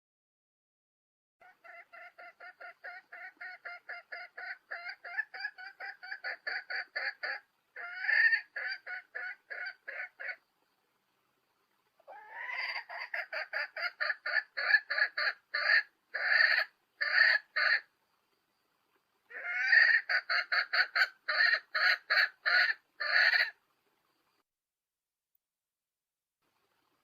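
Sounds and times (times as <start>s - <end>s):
hen cackling: 1.4s - 10.4s, 12.0s - 17.9s, 19.3s - 23.6s.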